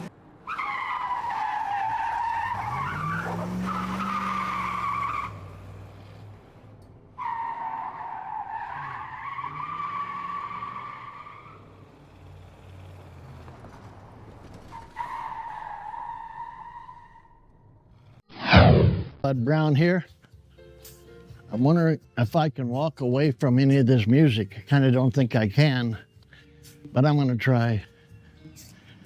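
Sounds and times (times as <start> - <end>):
car tires squealing: 0.0 - 17.6
engine revving: 2.0 - 7.2, 8.7 - 14.9.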